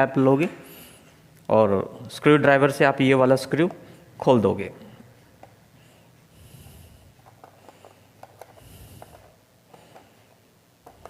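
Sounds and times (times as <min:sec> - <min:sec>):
soft nasal breaths: 0:00.6 - 0:01.3, 0:04.8 - 0:11.0.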